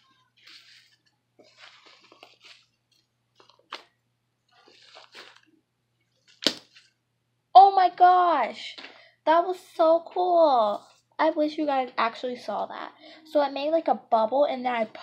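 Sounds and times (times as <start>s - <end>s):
slime squishing: 4.5s - 5.6s.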